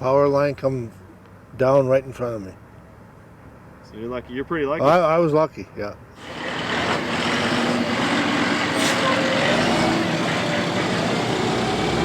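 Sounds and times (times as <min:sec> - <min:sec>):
short hiss: 0:08.7 - 0:09.3.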